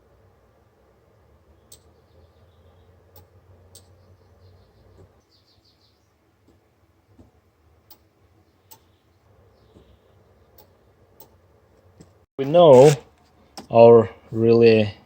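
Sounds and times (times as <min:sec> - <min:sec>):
faint sharp clicks: 0:01.7 - 0:01.9.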